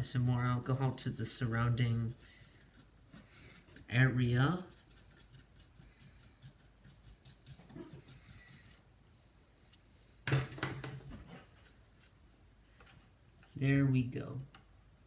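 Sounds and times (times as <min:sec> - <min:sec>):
toothbrush scrubbing circuit board: 0:00.0 - 0:08.8.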